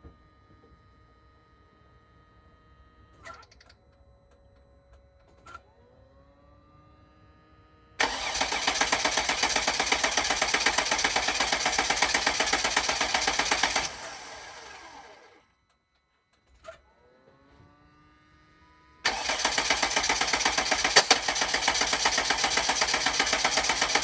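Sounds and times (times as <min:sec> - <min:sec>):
starter cranking diesel engine: 0:08.0 - 0:15.4, 0:19.0 - 0:24.0.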